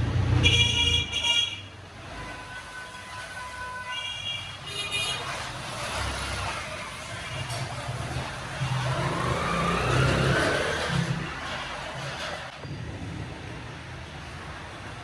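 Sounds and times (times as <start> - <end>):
truck engine speeding up: 7.7 - 15.0.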